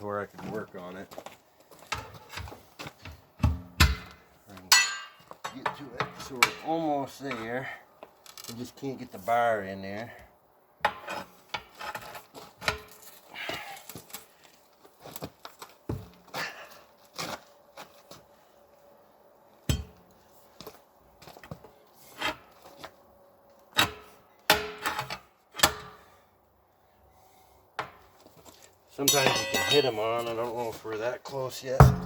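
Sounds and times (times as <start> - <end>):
tire irons clanking on rim: 29.0 - 30.2, 31.8 - 32.0.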